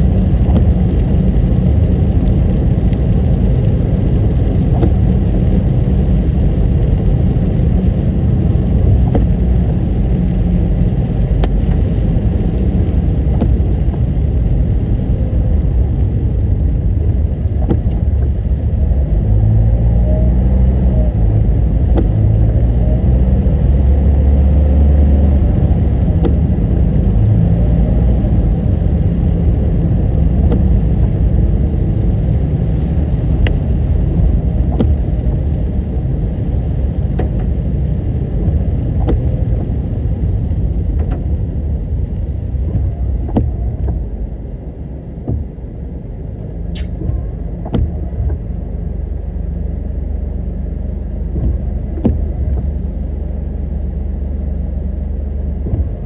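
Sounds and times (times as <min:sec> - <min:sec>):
car engine and road noise: 0:00.0 - 0:56.0.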